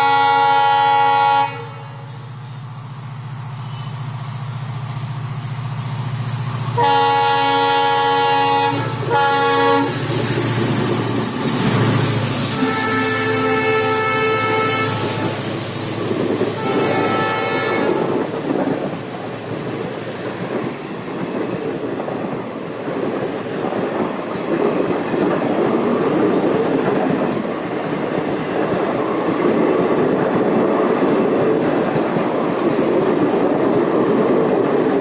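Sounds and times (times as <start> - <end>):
train horn: 0.0 - 2.0, 6.7 - 10.2, 12.0 - 15.6, 16.2 - 18.4
train rumble and wheel clatter: 0.0 - 35.0.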